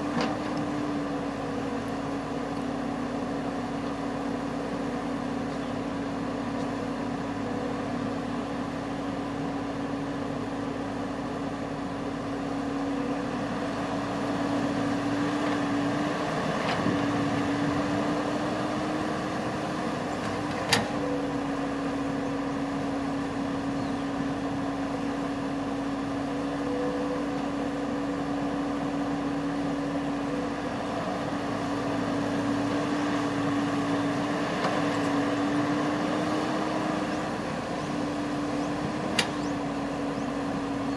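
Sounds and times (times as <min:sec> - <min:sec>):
harvester engine droning: 0:00.0 - 0:40.9.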